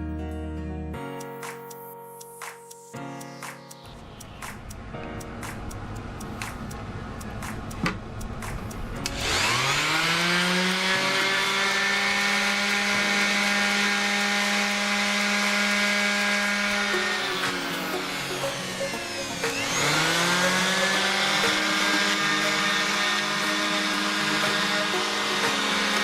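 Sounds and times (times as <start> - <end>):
electric power tool spinning up: 9.1 - 26.0.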